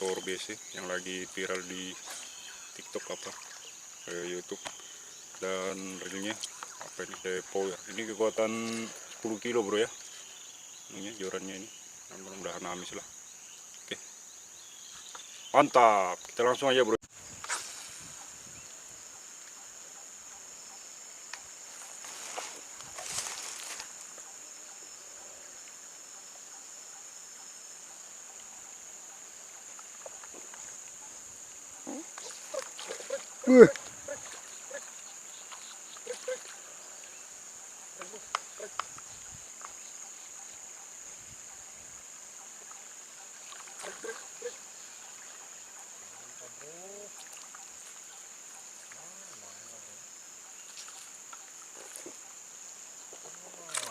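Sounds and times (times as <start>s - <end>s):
insects droning: 0.0s - 53.9s.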